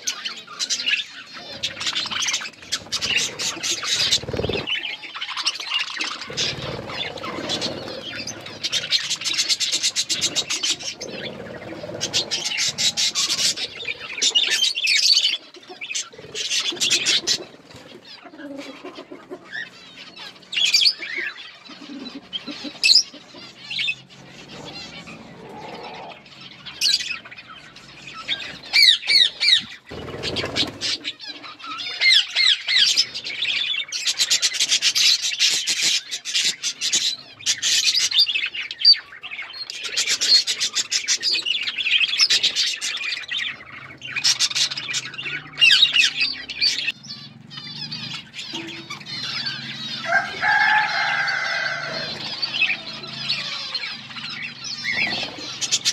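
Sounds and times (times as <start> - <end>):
budgerigars chattering and chirping: 0.0 - 55.9.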